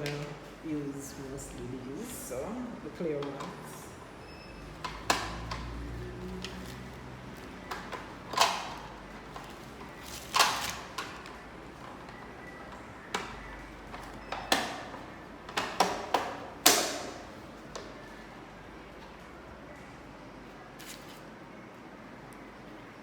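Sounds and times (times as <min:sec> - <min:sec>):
plastic parts clicking and knocking: 0:07.4 - 0:12.2, 0:13.1 - 0:17.9.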